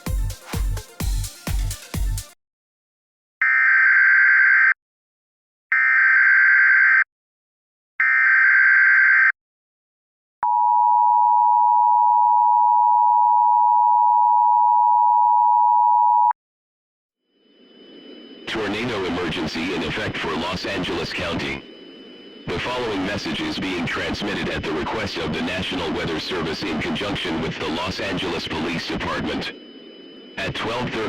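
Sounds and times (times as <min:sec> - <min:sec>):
dance music: 0:00.0 - 0:02.3
two-tone attention signal: 0:17.4 - 0:24.8, 0:25.8 - 0:31.0
digital data tone bursts: 0:17.4 - 0:31.0.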